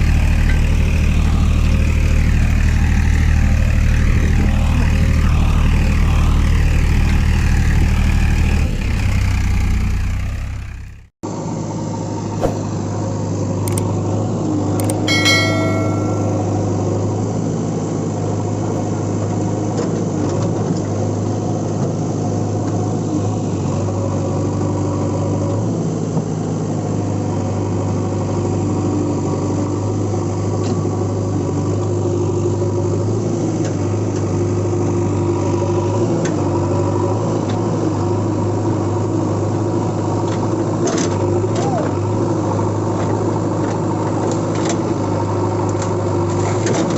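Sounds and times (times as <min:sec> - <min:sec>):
engine running: 0:00.0 - 0:46.9
clicks: 0:13.6 - 0:13.9
short pitched tone: 0:15.0 - 0:16.8.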